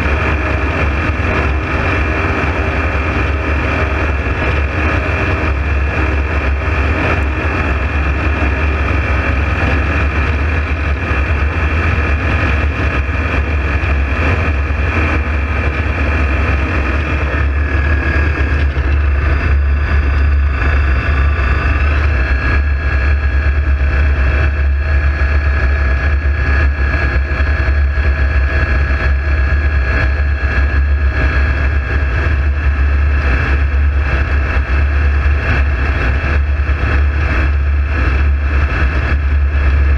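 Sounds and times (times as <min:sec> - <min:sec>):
engine drone with whine: 0:00.0 - 0:39.9.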